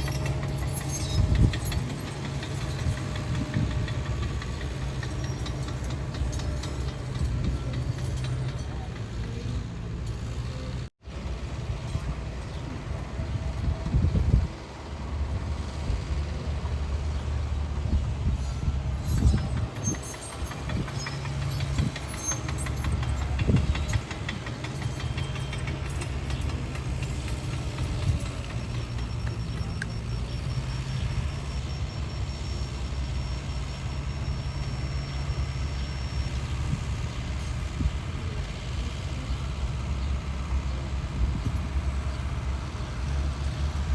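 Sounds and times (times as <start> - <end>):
metallic knocks and clanks: 0.0 - 9.4, 18.4 - 30.1
diesel engine running: 0.0 - 43.9.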